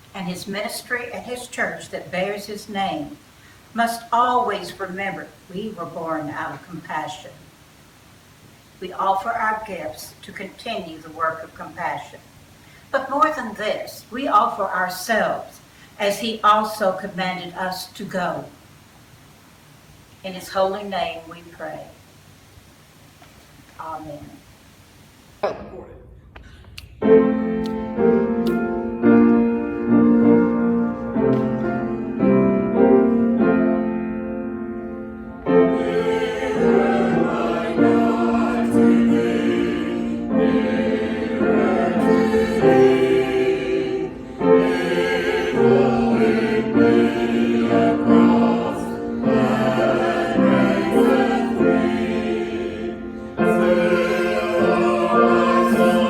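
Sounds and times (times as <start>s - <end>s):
choir singing: 31.4s - 33.1s, 35.5s - 56.0s.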